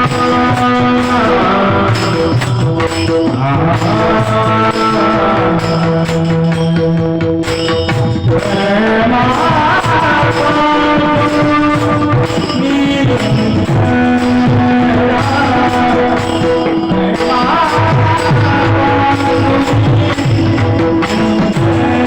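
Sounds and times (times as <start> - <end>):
harmonium: 0.0 - 22.0
man singing: 0.0 - 22.0
rhythmic percussion: 0.0 - 22.0.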